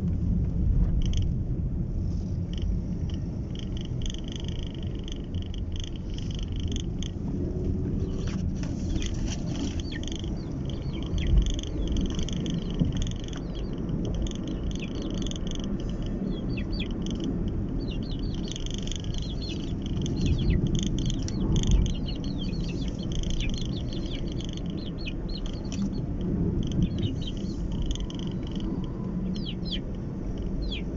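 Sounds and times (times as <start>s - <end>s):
car engine rumble: 0.0s - 30.9s
road noise: 0.0s - 30.9s
animal calls chirping: 8.9s - 26.0s, 26.6s - 29.8s, 30.6s - 30.9s.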